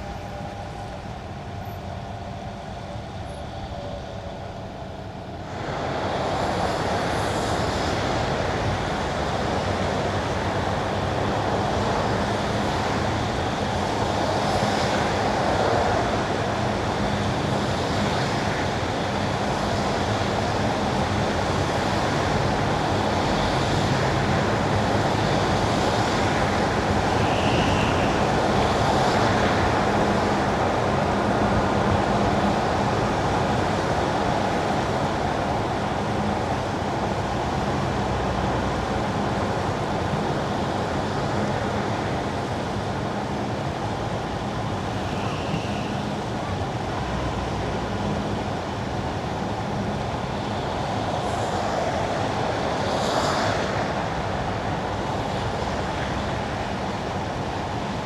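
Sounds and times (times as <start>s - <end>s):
car tyres on wet asphalt: 43.5s - 49.6s.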